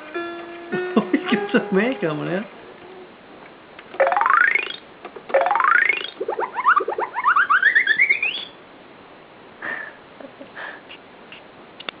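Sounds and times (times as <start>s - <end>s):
toy rising electronic chirps: 4.0s - 8.6s.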